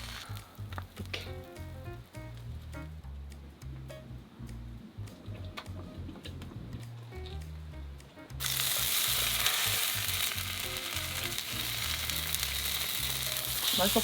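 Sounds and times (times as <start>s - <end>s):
bread sizzling in a pan: 0.0s - 0.7s, 8.4s - 14.0s.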